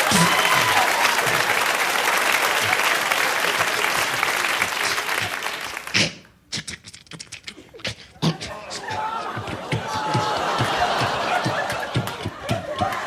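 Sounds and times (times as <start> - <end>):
audience applauding: 0.0 - 6.0, 9.0 - 13.0.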